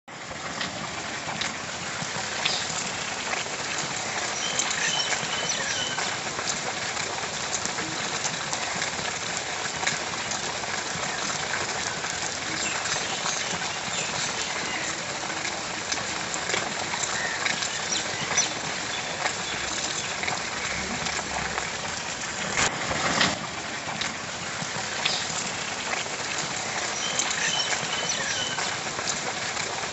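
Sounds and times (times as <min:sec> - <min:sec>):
steady rain falling: 0:00.1 - 0:29.9.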